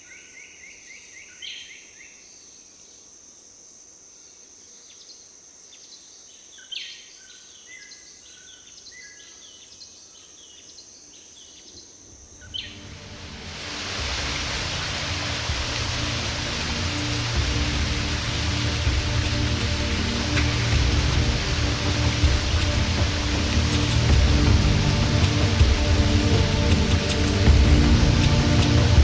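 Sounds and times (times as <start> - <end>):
high insect drone: 8.8 - 29.0
music: 12.5 - 29.0
loud rushing noise: 12.6 - 29.0.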